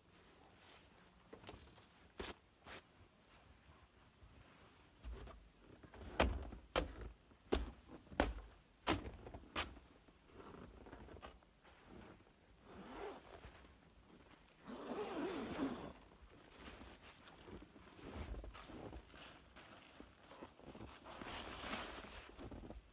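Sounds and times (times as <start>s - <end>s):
rustling and scraping handling noise: 0.0s - 8.4s, 9.0s - 22.9s.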